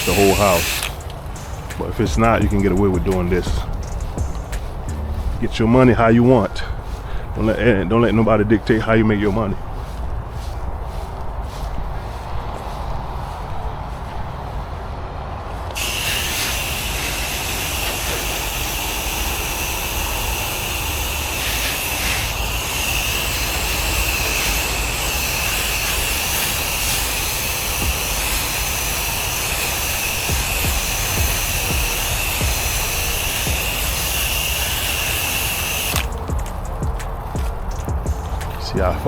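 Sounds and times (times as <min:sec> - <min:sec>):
pressure washer water jet hissing: 0:00.0 - 0:10.0, 0:15.7 - 0:39.0
pressure washer engine rumble: 0:00.0 - 0:12.2, 0:15.7 - 0:39.0.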